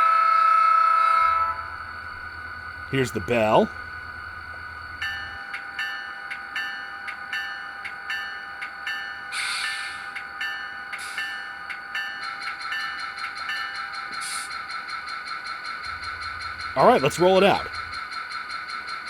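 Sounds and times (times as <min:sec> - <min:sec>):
diesel engine idling: 0:01.2 - 0:05.4, 0:15.8 - 0:18.2
locomotive bell ringing: 0:01.2 - 0:09.3, 0:15.8 - 0:18.0.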